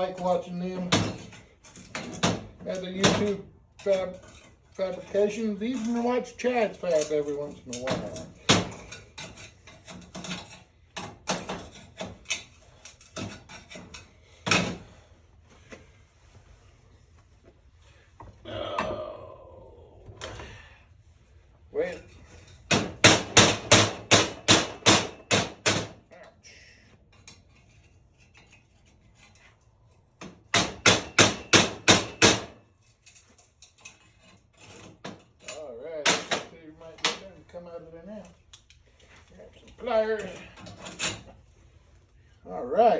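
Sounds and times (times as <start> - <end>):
hammer striking muffler pipe: 22.7 - 26.0, 30.5 - 32.6
faint clicks and scrapes: 27.1 - 30.2.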